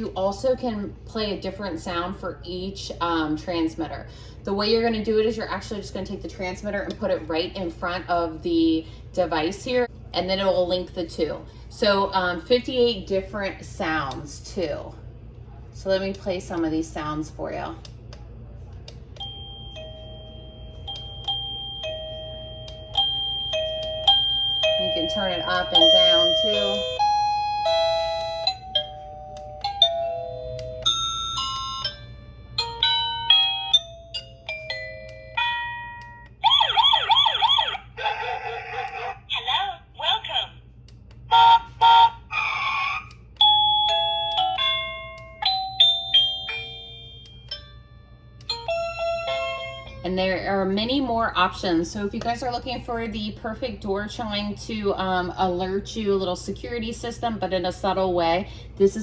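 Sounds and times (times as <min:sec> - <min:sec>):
electronic doorbell chime tune: 0:19.2 - 0:37.6, 0:43.4 - 0:50.0.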